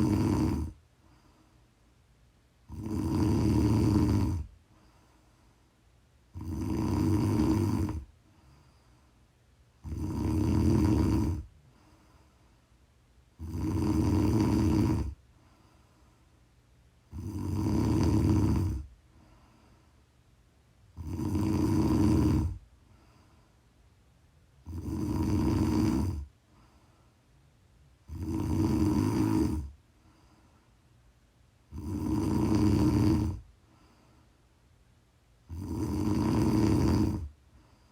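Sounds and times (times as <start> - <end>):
person snoring: 0.0 - 0.8, 2.7 - 4.5, 6.3 - 8.1, 9.8 - 11.5, 13.4 - 15.2, 17.1 - 18.9, 21.0 - 22.6, 24.6 - 26.3, 28.0 - 29.8, 31.7 - 33.5, 35.5 - 37.3
quiet breathing: 0.0 - 37.9.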